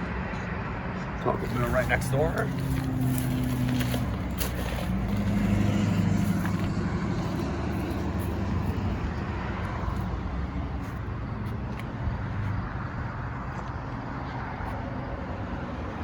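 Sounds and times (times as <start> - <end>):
road traffic noise: 0.0 - 16.0
car engine running: 1.2 - 11.8.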